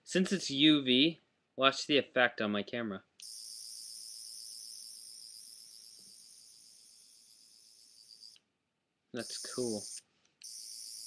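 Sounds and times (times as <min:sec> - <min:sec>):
toy high-pitched pulsing whine: 0:03.2 - 0:08.4, 0:09.2 - 0:11.0.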